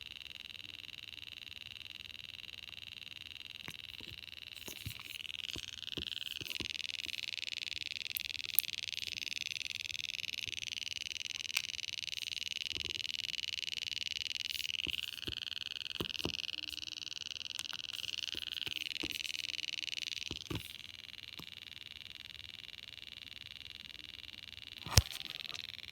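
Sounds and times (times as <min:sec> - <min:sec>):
rapid electronic ticking: 0:02.3 - 0:23.2.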